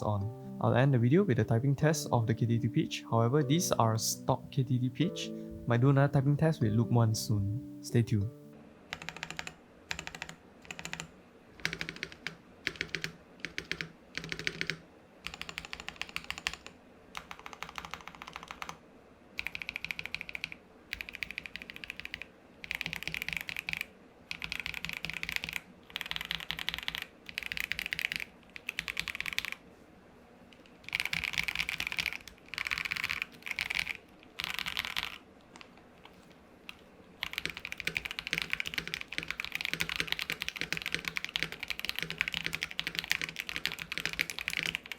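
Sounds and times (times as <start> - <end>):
mechanical keyboard typing: 8.9 - 18.8, 19.4 - 29.6, 30.5 - 44.9.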